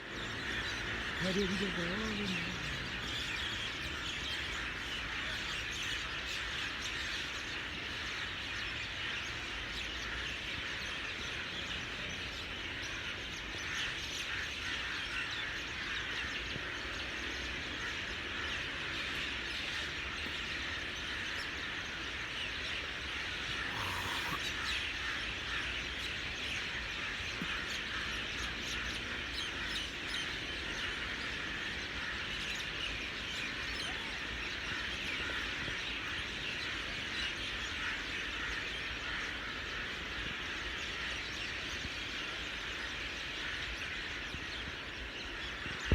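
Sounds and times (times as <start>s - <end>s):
many small birds chirping: 0.0s - 45.9s.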